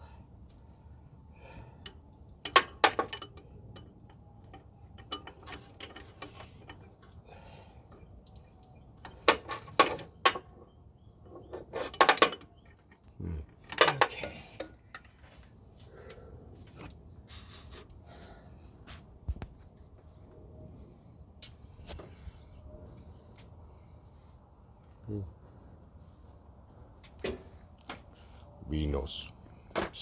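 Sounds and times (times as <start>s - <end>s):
metal tools clinking: 1.8s - 7.2s, 7.9s - 15.3s.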